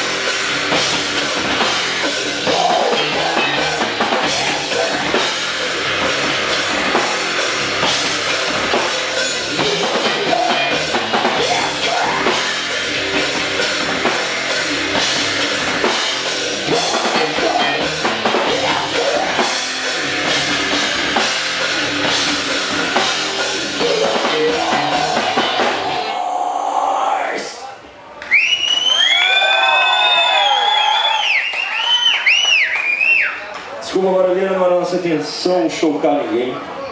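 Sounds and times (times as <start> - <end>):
drum kit: 0.0 - 26.2
heavy rock band playing live: 0.0 - 26.3.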